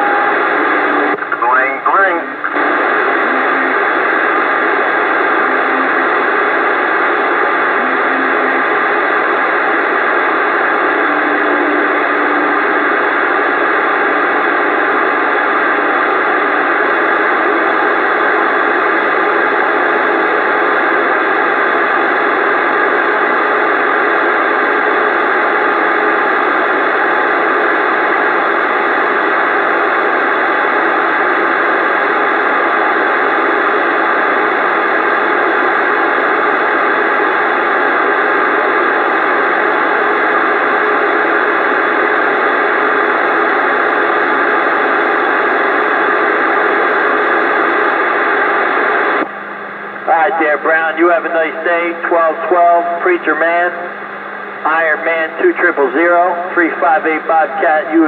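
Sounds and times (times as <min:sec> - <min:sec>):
radio receiver hissing: 0:00.0 - 0:18.8.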